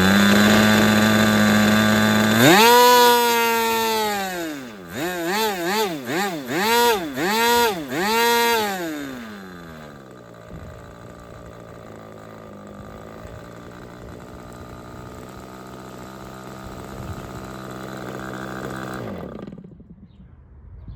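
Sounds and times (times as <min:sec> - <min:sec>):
model engine running: 0:00.0 - 0:19.9.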